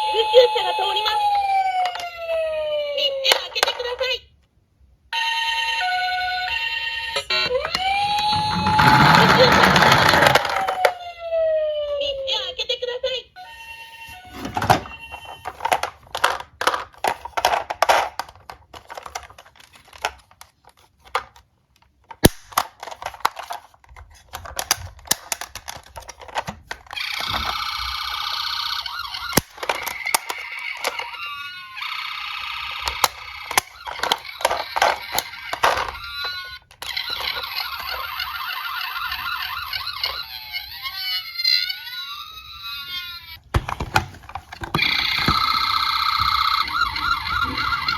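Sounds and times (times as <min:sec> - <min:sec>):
siren: 0:00.0 - 0:03.0, 0:05.2 - 0:12.2, 0:13.4 - 0:15.6, 0:27.0 - 0:36.4, 0:44.7 - 0:47.9
toy cars clicking and clattering: 0:03.3 - 0:04.1, 0:07.1 - 0:11.0, 0:14.5 - 0:47.9.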